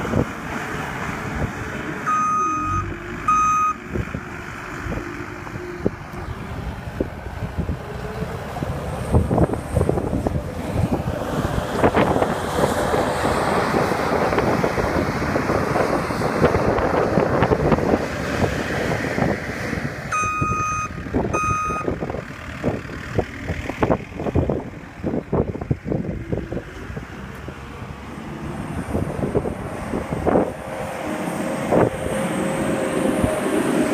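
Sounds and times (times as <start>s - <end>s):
skid steer loader running: 0.0s - 18.4s
back-up alarm beeps: 2.1s - 3.8s, 20.1s - 21.9s.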